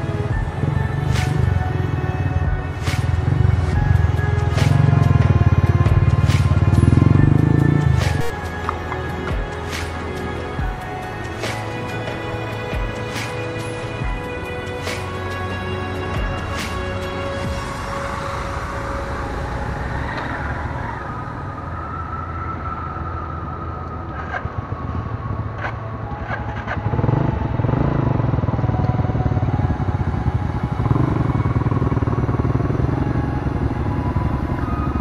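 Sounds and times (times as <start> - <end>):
motorcycle engine revving: 0.0 - 8.9, 24.2 - 35.0.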